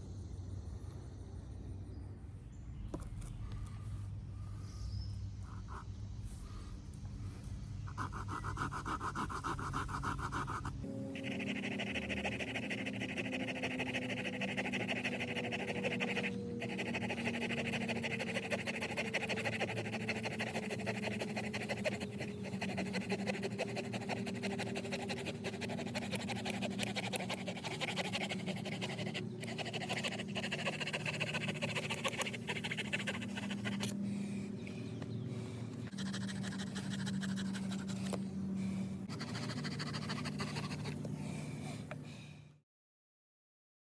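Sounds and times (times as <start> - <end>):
saw rasping through hard wood: 11.2 - 33.9.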